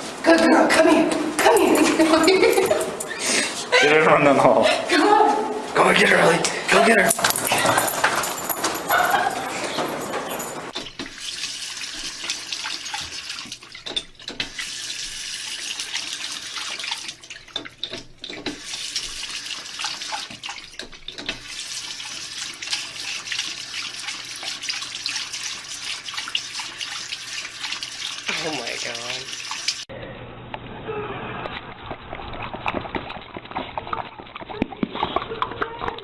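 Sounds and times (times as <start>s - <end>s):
running water hissing: 18.4s - 29.9s.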